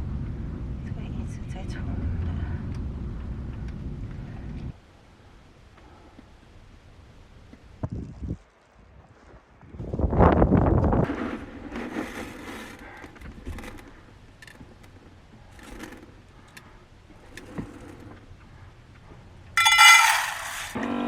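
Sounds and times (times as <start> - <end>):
scraping and handling noises: 11.0 - 18.2, 19.6 - 20.8.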